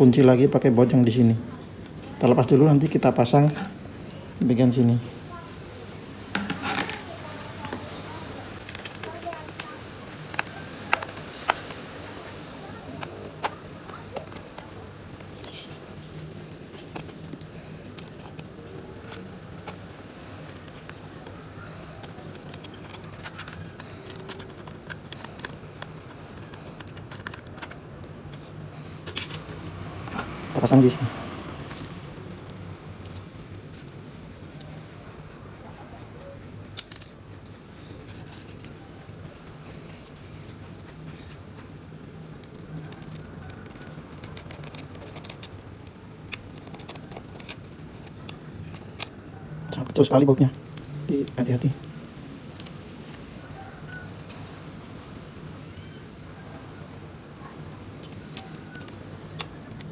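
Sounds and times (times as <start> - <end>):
small parts clicking and tapping: 8.6 - 11.9, 16.4 - 30.3, 31.6 - 35.4, 36.0 - 53.3, 56.8 - 59.9.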